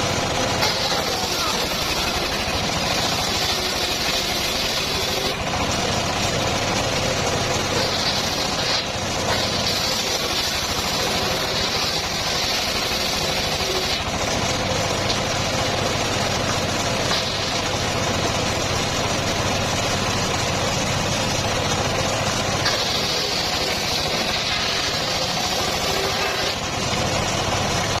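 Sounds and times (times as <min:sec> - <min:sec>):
sawmill engine drone: 0:00.0 - 0:28.0
bright saw hiss: 0:07.8 - 0:14.1, 0:22.6 - 0:26.6.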